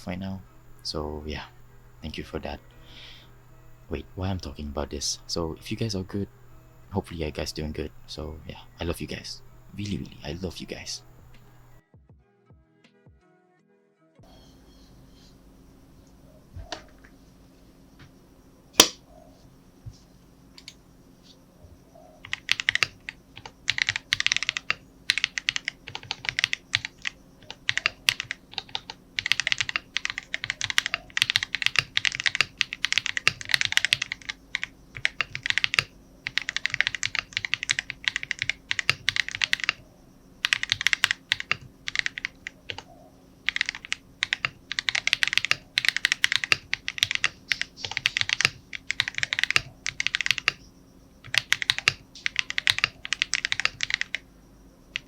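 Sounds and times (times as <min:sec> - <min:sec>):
keyboard typing: 0:00.0 - 0:11.8, 0:18.8 - 0:19.0, 0:20.5 - 0:21.4, 0:22.1 - 0:54.3
sharp click: 0:18.8 - 0:19.0.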